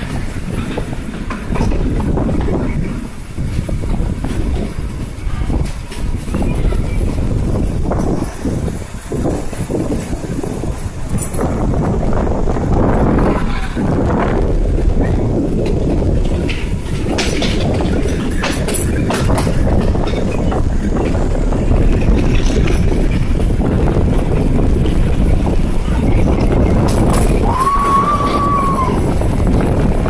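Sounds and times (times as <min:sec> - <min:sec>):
train wheels rumbling on rails: 0:00.0 - 0:30.0
carriage clicks and clatter: 0:15.7 - 0:20.7.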